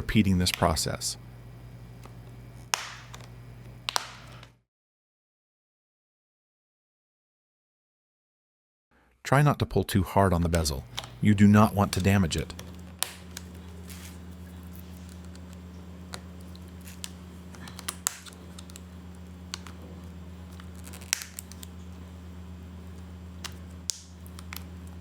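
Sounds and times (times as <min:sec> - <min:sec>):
steady low hum: 0:00.0 - 0:04.6, 0:09.2 - 0:25.0
plastic clips clicking: 0:02.7 - 0:03.3, 0:16.1 - 0:18.8, 0:19.5 - 0:19.8.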